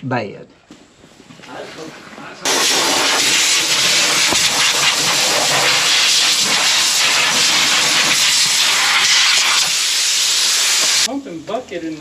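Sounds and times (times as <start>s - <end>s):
air blower hissing: 2.4s - 11.1s.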